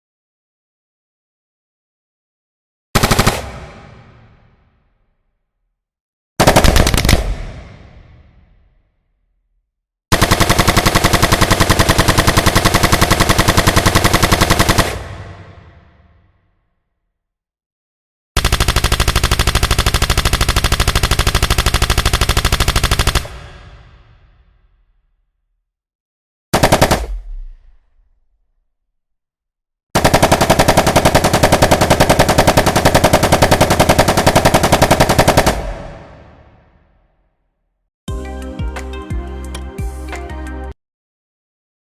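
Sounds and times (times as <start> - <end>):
automatic rifle burst: 6.5 - 7.6.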